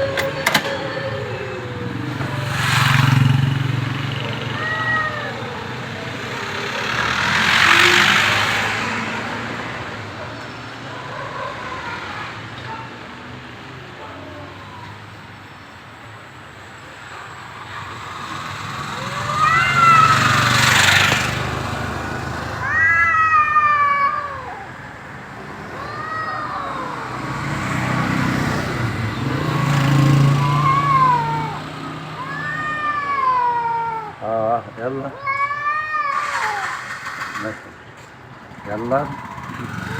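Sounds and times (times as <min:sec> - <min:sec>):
cats yowling: 0:00.0 - 0:08.8, 0:10.8 - 0:12.8, 0:17.1 - 0:27.8, 0:29.1 - 0:37.6.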